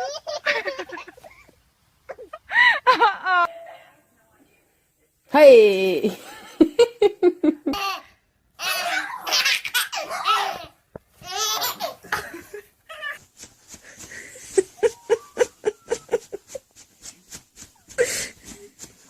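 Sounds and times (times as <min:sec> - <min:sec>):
young child laughing: 0:00.0 - 0:01.5, 0:11.3 - 0:13.2, 0:14.0 - 0:16.6.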